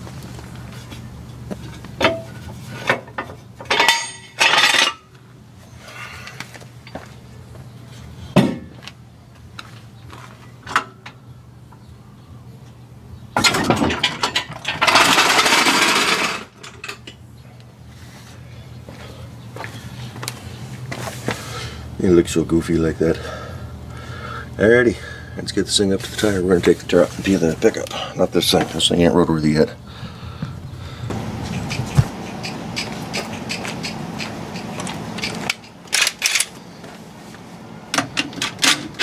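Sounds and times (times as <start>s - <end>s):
metal clinks of lug nuts and tools: 1.7s - 5.1s, 32.4s - 36.6s
steady low hum: 14.7s - 38.9s.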